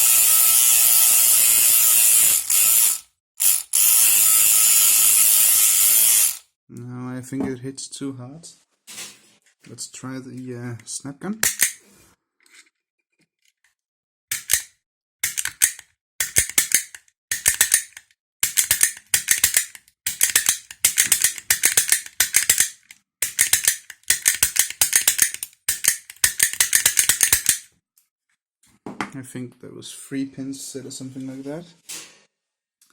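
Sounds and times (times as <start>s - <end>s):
rapid sharp metallic clicks: 11.4s - 11.8s, 14.3s - 27.7s.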